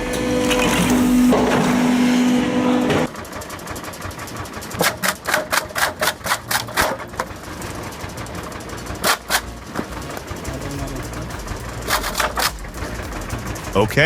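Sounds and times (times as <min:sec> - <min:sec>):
wood chipper humming: 0:00.0 - 0:14.0
sharp clacks: 0:04.3 - 0:07.3, 0:09.0 - 0:14.0.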